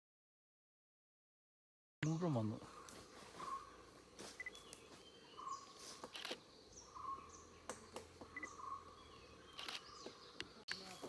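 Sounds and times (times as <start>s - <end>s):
bird repeating low note: 2.0s - 3.8s, 6.7s - 10.9s
birds paired chirps: 2.0s - 11.0s.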